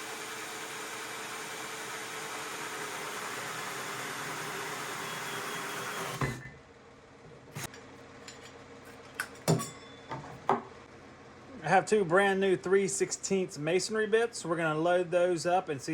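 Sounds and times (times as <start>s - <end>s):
hammer drill cutting wood: 0.0s - 6.4s.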